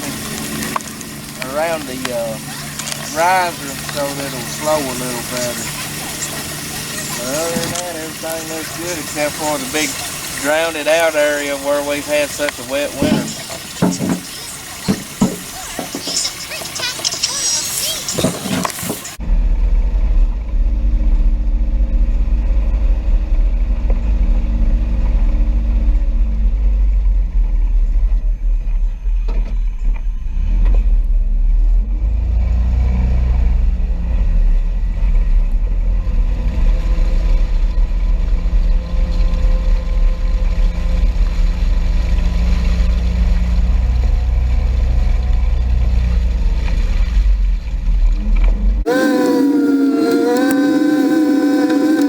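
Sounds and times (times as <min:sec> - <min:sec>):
utility vehicle engine rumbling: 0:00.0 - 0:16.8, 0:47.6 - 0:52.0.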